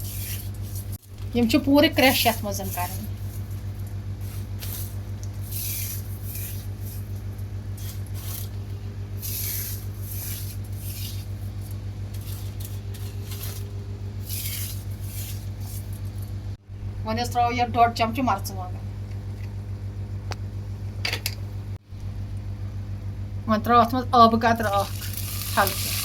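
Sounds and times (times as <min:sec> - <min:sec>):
spoon scraping frying masala: 0:00.0 - 0:01.0, 0:02.0 - 0:08.6, 0:09.2 - 0:16.3
steady low hum: 0:00.0 - 0:26.0.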